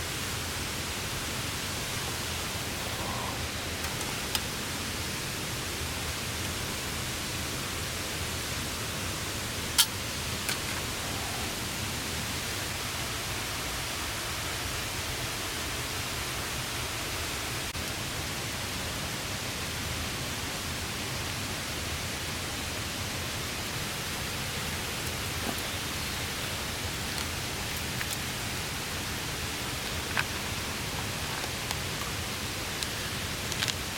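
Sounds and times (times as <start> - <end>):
rain pattering on a tarp: 20.3 - 33.9.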